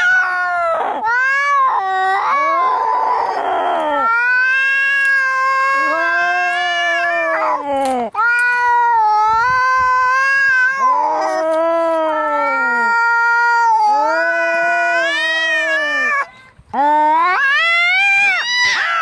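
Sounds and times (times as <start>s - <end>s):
cats yowling: 0.0s - 16.3s, 17.1s - 19.0s.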